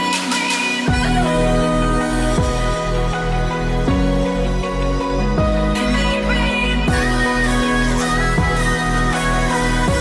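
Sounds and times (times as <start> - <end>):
electronic pop music: 0.0 - 10.0.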